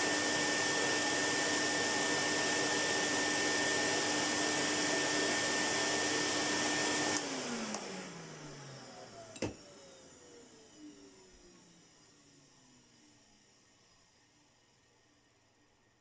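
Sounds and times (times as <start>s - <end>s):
vacuum cleaner motor winding down: 0.0s - 12.7s.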